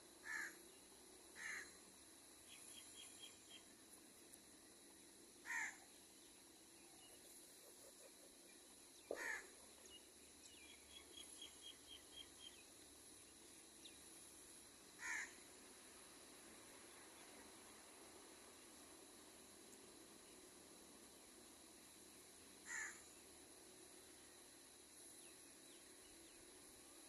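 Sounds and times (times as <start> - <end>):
faint high ticking chirps: 0.0 - 27.0
crow cawing: 0.2 - 0.6, 1.4 - 1.7, 5.4 - 5.8, 9.1 - 9.5, 15.0 - 15.4, 22.6 - 23.0.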